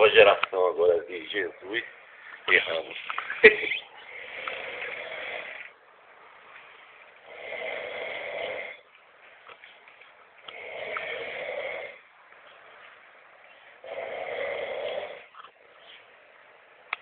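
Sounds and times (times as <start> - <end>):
quiet breathing: 3.8 - 16.5
man snoring heavily: 4.0 - 5.7, 7.2 - 8.8, 10.5 - 12.0, 13.8 - 15.3.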